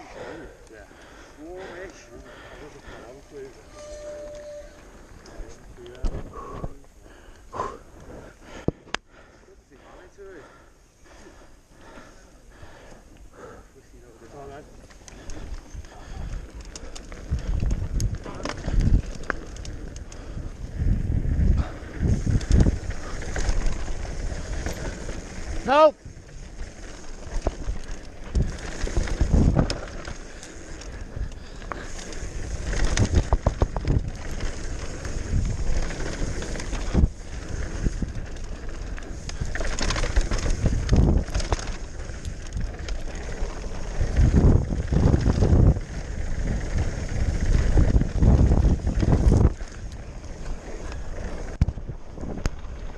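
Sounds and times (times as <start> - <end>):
bike rattling over rough ground: 0.0 - 52.9
wind noise on microphone: 15.1 - 52.9.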